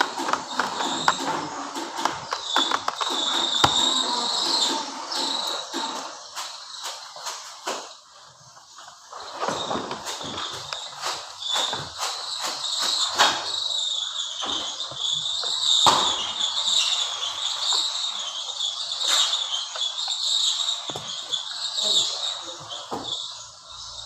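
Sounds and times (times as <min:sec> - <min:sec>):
sharp knocks and clicks: 0:00.0 - 0:07.9
insects chirping: 0:00.0 - 0:24.0.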